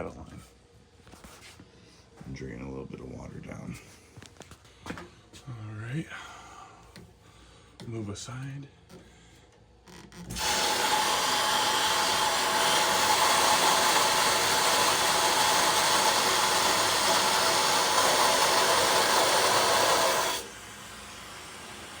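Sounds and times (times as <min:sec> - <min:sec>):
water gushing from valve: 0:10.3 - 0:22.0.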